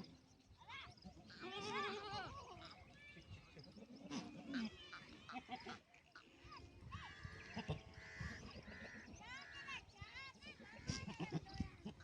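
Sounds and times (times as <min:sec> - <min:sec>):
goats bleating: 0:01.3 - 0:02.8.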